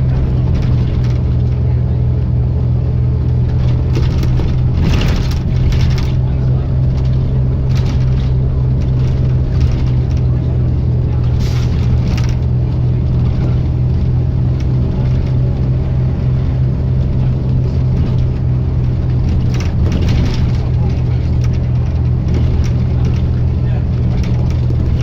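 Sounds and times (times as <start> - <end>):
diesel bus engine droning: 0.0 - 25.0.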